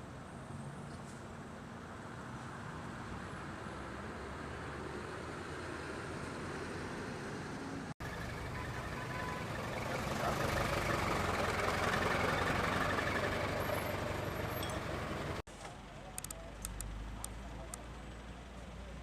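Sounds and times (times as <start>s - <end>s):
street noise: 0.0s - 19.0s
vehicle engine running: 8.0s - 15.5s.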